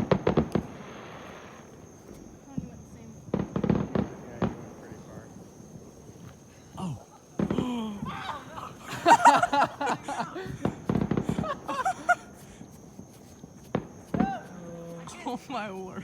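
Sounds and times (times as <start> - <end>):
firework pops: 0.0 - 6.7, 7.4 - 8.7, 9.9 - 15.8
people shouting excitedly: 6.9 - 10.6.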